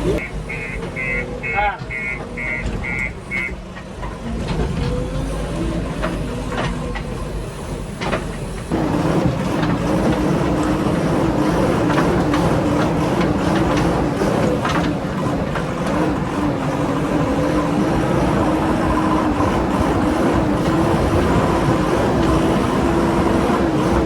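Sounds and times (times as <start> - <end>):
diesel backhoe engine running: 0.0 - 24.0
short high beeps: 0.2 - 3.6.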